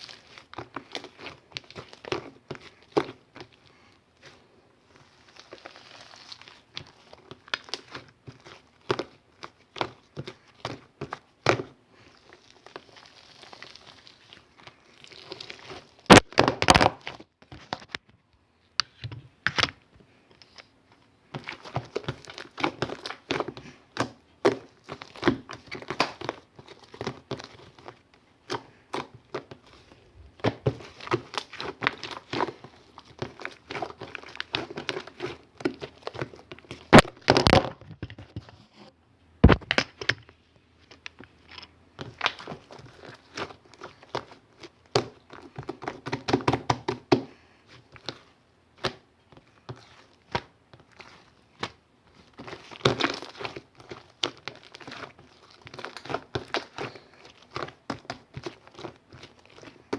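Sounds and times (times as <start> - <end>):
crinkling and crackling: 0.0 - 59.9.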